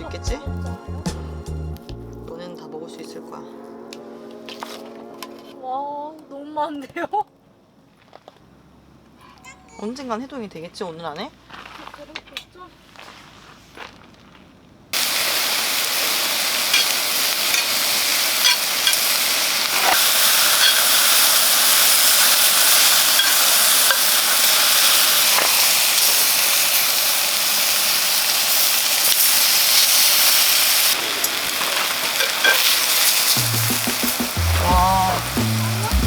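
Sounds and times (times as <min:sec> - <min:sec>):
food sizzling in a pan: 0:15.0 - 0:36.0.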